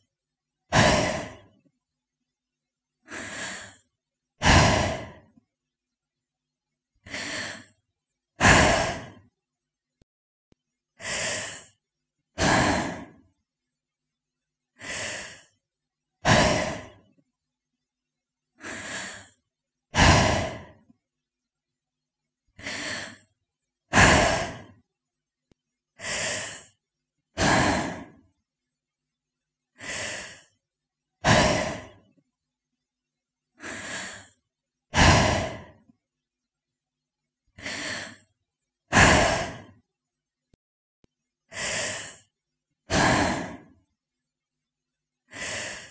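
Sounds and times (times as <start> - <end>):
woman breathing: 0.7 - 1.6, 3.0 - 5.4, 7.0 - 7.8, 8.4 - 9.3, 11.0 - 13.2, 14.7 - 15.6, 16.2 - 17.1, 18.6 - 19.4, 20.0 - 21.0, 22.6 - 23.3, 23.9 - 24.8, 26.0 - 28.2, 29.7 - 30.6, 31.2 - 32.1, 33.6 - 35.9, 37.6 - 38.3, 38.9 - 39.8, 41.5 - 43.8, 45.2 - 45.9.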